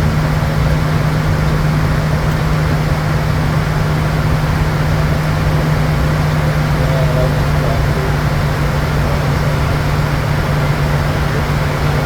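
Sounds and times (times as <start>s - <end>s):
jet cabin drone: 0.0s - 12.0s.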